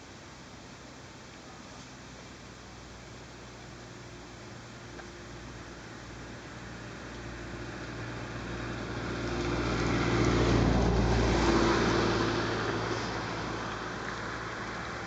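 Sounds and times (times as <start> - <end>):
vehicle passing by: 6.6 - 15.0.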